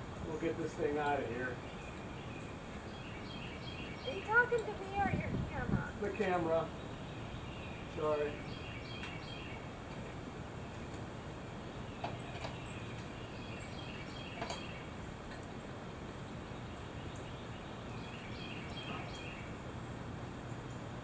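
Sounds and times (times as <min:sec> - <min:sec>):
steady background noise: 0:00.0 - 0:21.0
faint bird chirps: 0:16.4 - 0:19.6.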